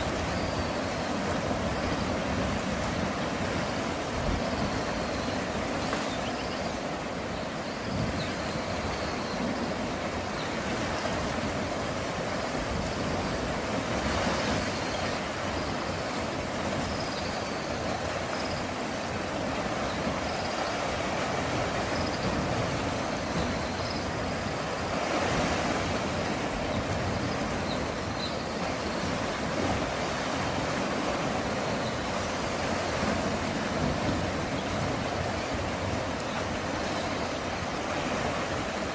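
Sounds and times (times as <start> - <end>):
waves washing against rocks: 8.8 - 38.9.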